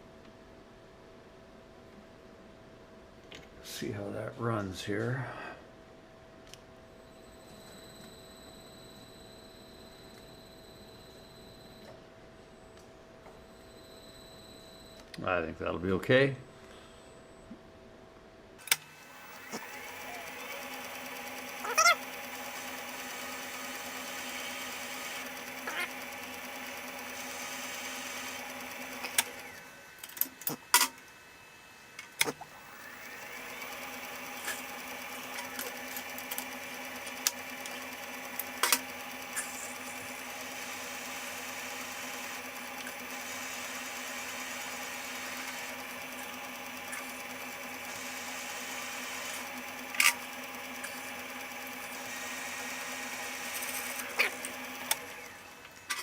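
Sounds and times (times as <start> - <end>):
metal lathe humming: 18.9 - 30.5, 32.4 - 55.9.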